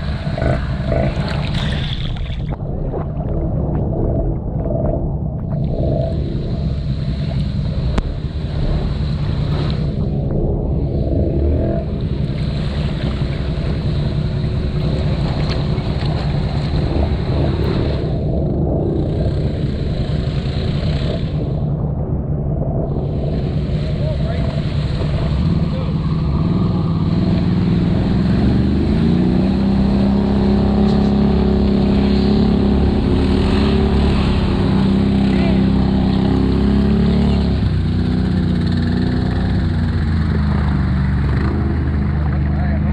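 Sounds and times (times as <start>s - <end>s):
atv engine running hard: 0.0s - 1.9s, 5.6s - 21.6s, 23.1s - 42.9s
rushing watery noise: 0.0s - 42.9s.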